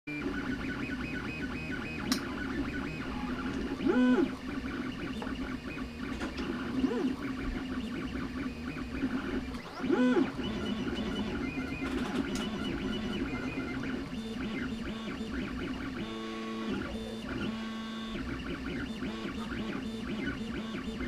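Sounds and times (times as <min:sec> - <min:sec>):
stepper motors humming: 0:00.1 - 0:21.0.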